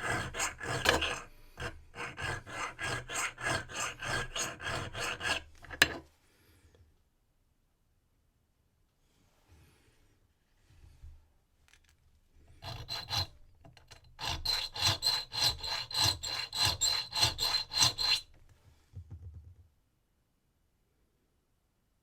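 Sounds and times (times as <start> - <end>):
hand file rasping on brass: 0.0 - 6.0, 12.6 - 18.4.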